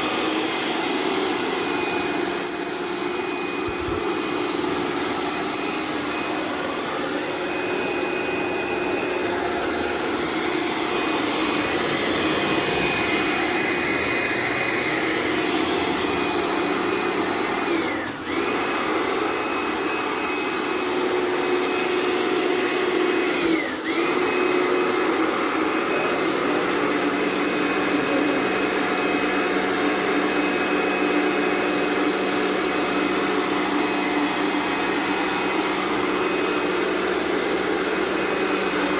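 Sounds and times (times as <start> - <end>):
machine motor whining: 0.0 - 21.0
blowing hiss: 7.9 - 18.2.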